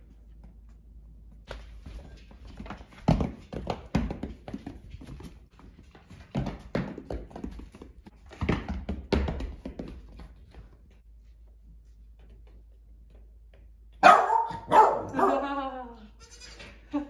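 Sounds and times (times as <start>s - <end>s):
goat hooves clattering on floor: 1.5s - 11.0s.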